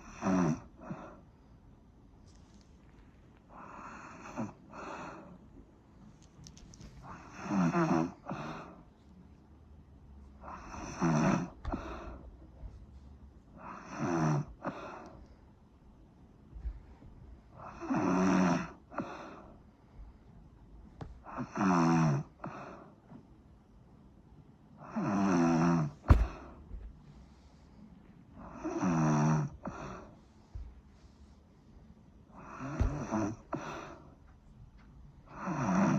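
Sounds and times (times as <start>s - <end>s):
rattling snores: 0.0s - 1.0s, 7.0s - 8.4s, 10.5s - 11.6s, 13.6s - 14.8s, 17.6s - 18.8s, 28.5s - 29.6s, 32.4s - 33.8s, 35.3s - 35.9s
quiet breathing: 0.0s - 23.8s, 24.8s - 35.9s.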